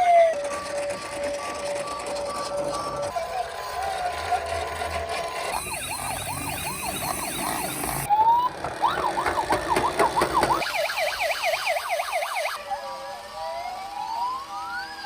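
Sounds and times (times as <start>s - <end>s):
toy electronic sirens wailing: 5.4s - 15.0s.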